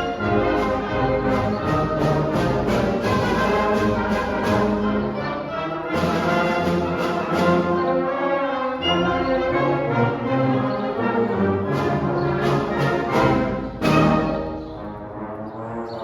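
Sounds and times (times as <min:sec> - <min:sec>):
concert band playing: 0:00.0 - 0:08.1, 0:11.5 - 0:14.7
trombone: 0:00.0 - 0:16.0.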